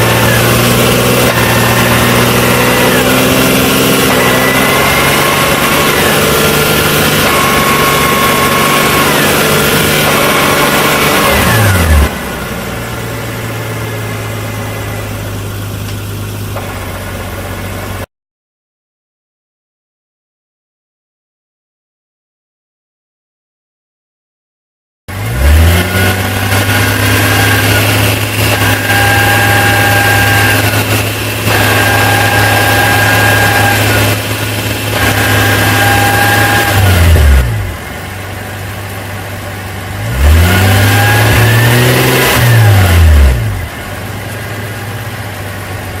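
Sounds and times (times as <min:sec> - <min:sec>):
car engine running: 0:00.0 - 0:18.1, 0:25.1 - 0:46.0
engine revving: 0:00.0 - 0:18.1, 0:25.1 - 0:46.0
high-pitched transmission whine: 0:00.0 - 0:18.1, 0:25.4 - 0:46.0.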